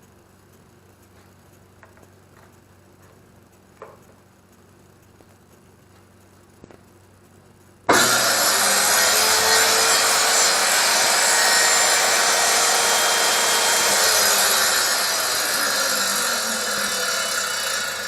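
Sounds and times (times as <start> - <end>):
table saw cutting wood: 7.9 - 18.0.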